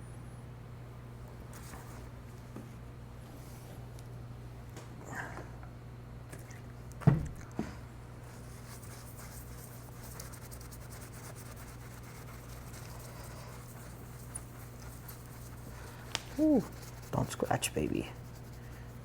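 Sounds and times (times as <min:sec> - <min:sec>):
low electrical hum: 0:00.0 - 0:19.0
thump: 0:07.0 - 0:07.3.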